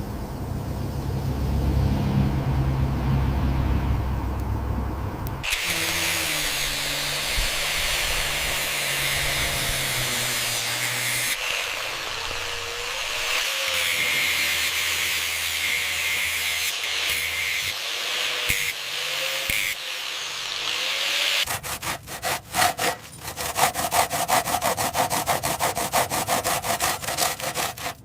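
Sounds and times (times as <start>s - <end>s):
handheld power tool running: 5.4s - 21.5s.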